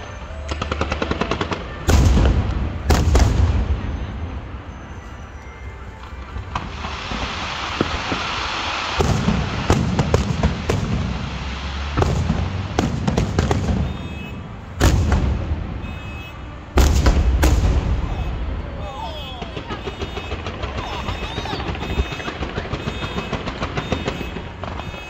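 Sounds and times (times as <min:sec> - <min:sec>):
fireworks bursting with sharp bangs: 0:00.0 - 0:25.0
firework shell hissing: 0:06.0 - 0:16.1.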